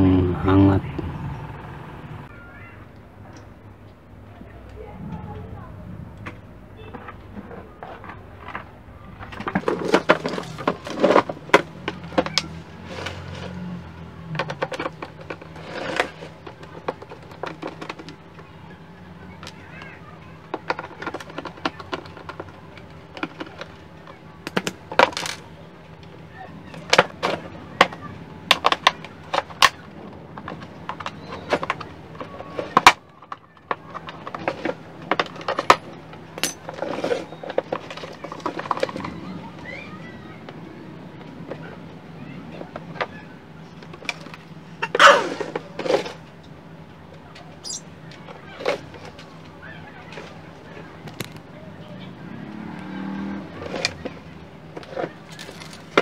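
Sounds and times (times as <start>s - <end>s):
clicks and rattles of tools: 7.8s - 13.6s, 14.3s - 18.5s, 19.4s - 26.1s, 26.7s - 39.2s, 51.0s - 51.5s, 53.6s - 56.0s
small tools clicking and tapping: 26.8s - 39.2s.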